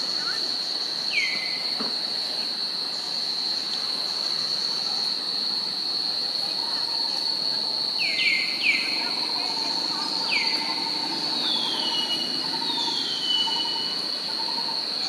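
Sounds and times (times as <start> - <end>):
high-pitched insect drone: 0.0 - 1.9, 2.6 - 15.0.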